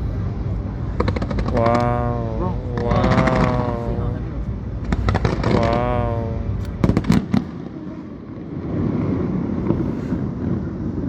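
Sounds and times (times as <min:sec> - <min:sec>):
low rumble: 0:00.0 - 0:11.0
fireworks crackling: 0:01.0 - 0:11.0
fireworks bangs: 0:02.7 - 0:04.0, 0:04.9 - 0:10.8.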